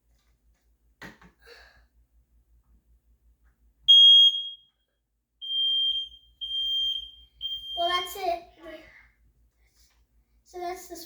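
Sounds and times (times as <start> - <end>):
smoke detector beep: 3.9 - 4.7, 5.4 - 8.2.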